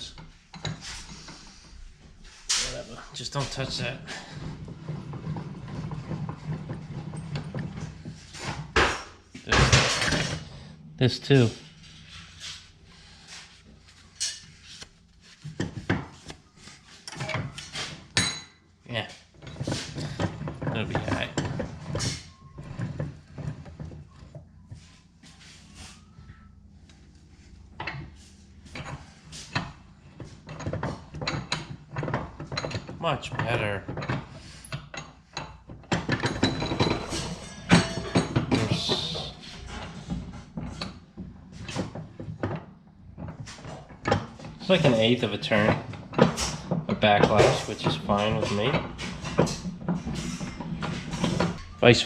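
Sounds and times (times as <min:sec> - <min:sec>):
metal knocks and clicks of vise: 0:28.7 - 0:51.7.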